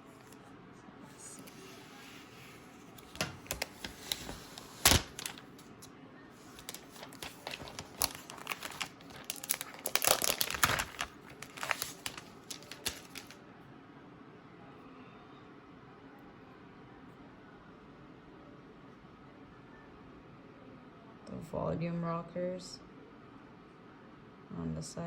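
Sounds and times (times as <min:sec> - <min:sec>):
plastic wrap crinkling: 0:03.0 - 0:13.4.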